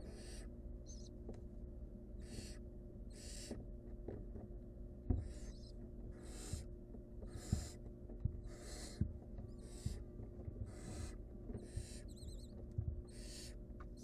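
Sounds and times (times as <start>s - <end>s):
owls rasping hiss calls: 0.0s - 1.1s, 2.2s - 3.6s, 5.2s - 6.7s, 7.3s - 7.8s, 8.4s - 10.0s, 10.6s - 13.6s
birds thumping and scuffling: 3.5s - 14.0s.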